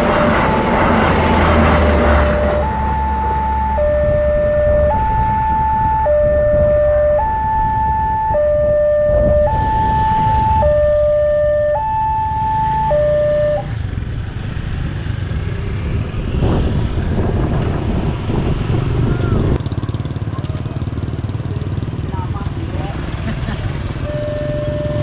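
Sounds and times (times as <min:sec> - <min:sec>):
two-tone crossing siren: 0:00.0 - 0:14.1, 0:24.0 - 0:25.0
road vehicle engines rumbling: 0:00.0 - 0:25.0.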